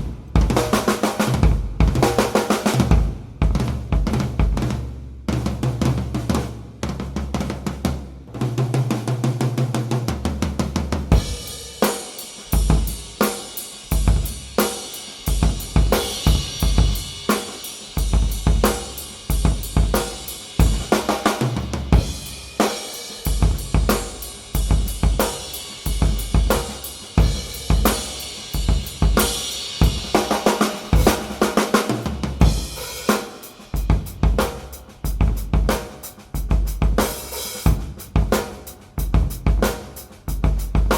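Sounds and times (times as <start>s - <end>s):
drum kit beat: 0.0s - 40.9s
ringing cymbals: 32.4s - 33.9s.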